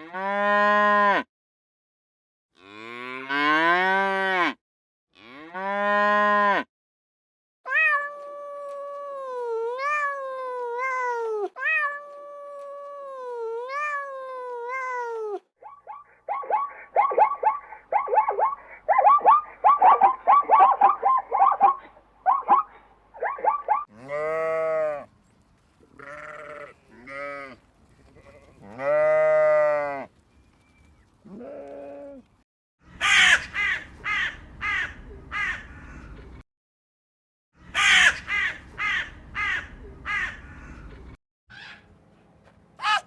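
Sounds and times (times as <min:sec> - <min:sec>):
sheep bleating: 0:23.9 - 0:25.1, 0:25.9 - 0:30.1.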